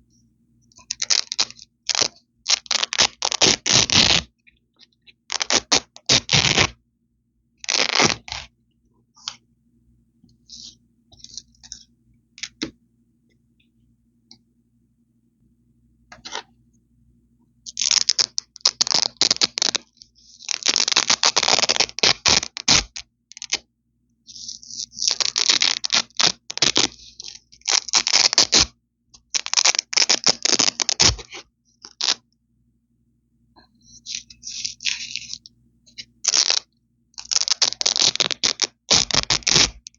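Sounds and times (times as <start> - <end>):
velcro ripping: 0.9 - 4.3, 5.3 - 6.8, 7.6 - 8.5, 17.7 - 23.6, 24.3 - 28.7, 29.3 - 32.2, 34.0 - 35.4, 36.2 - 39.9.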